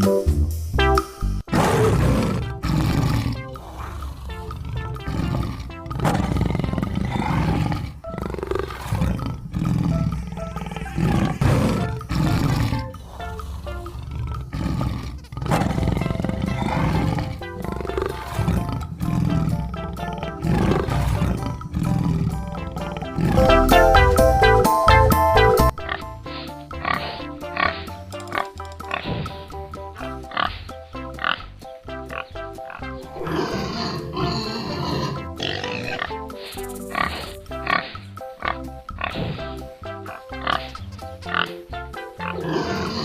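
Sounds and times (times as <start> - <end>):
background music: 0.0 - 43.0
big cat roaring: 1.5 - 24.1, 32.8 - 41.6, 42.2 - 43.0.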